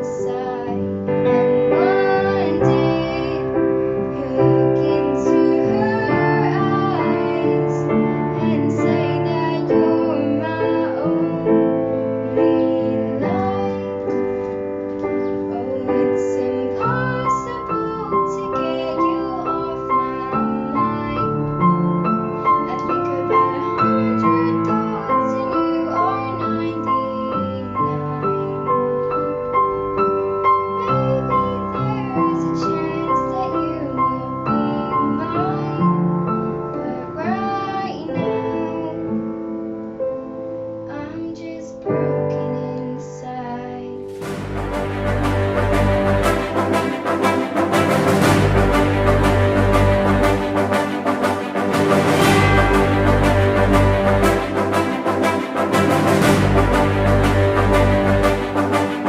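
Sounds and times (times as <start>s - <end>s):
girl singing pop ballad: 0.0s - 29.3s, 30.8s - 44.1s
piano accompaniment: 0.0s - 59.0s.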